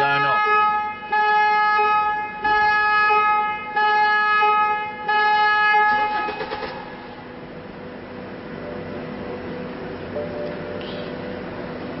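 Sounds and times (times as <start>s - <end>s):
car alarm horn blasts: 0.0s - 6.5s.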